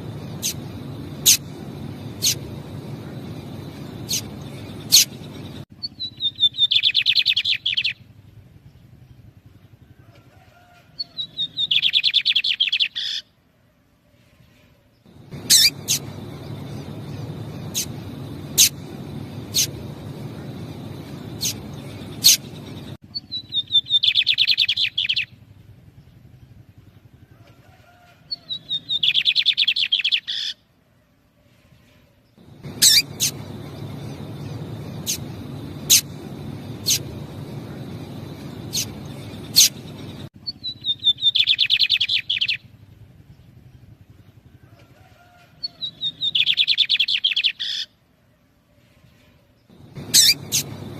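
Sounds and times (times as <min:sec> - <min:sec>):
low background rumble: 0:00.0 - 0:05.7, 0:15.1 - 0:23.6, 0:32.4 - 0:41.3, 0:49.7 - 0:50.9
bird fast trill: 0:00.0 - 0:08.0, 0:15.1 - 0:25.3, 0:32.4 - 0:42.6, 0:49.7 - 0:50.9
bird sharp call notes: 0:15.3 - 0:20.6, 0:32.6 - 0:40.2, 0:49.9 - 0:50.9.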